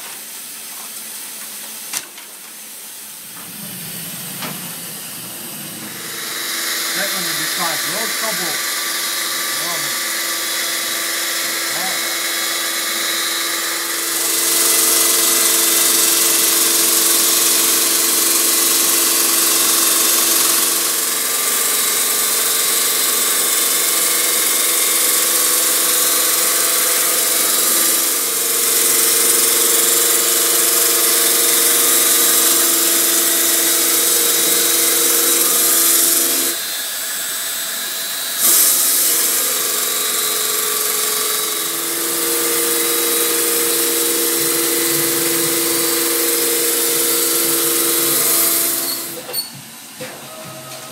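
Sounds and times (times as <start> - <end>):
loud hiss: 3.1 - 8.8
stone-cutting machine whining: 3.2 - 50.9.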